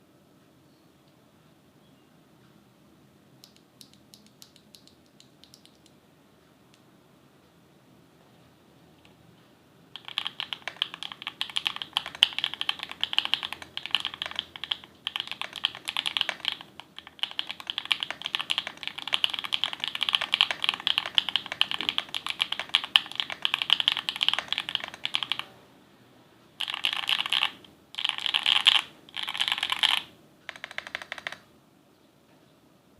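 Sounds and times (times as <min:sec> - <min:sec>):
typing on mechanical keyboard: 0:10.0 - 0:25.5, 0:26.6 - 0:31.5.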